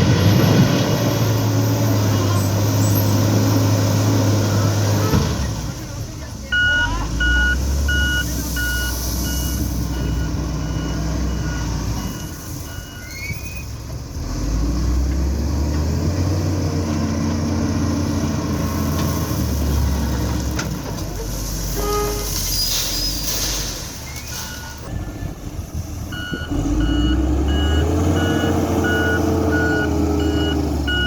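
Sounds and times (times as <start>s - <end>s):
loader diesel engine under load: 0.0s - 31.0s
reversing alarm beeping: 6.5s - 13.5s, 26.1s - 31.0s.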